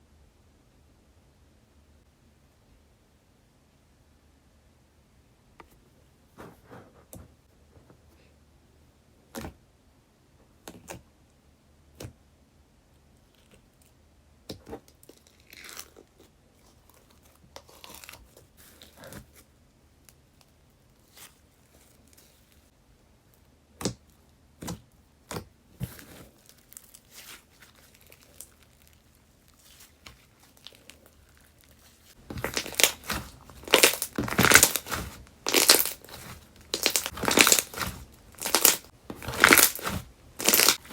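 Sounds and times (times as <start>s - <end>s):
slime crackling and crunching: 25.9s - 40.9s
slime clicking and popping: 32.3s - 40.9s.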